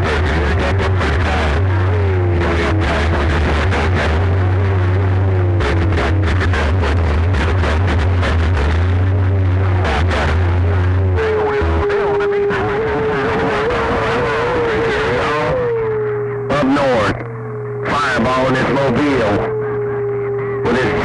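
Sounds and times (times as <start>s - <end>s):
radio receiver low hum: 0.0s - 21.0s
wavering whistling tones: 14.9s - 21.0s.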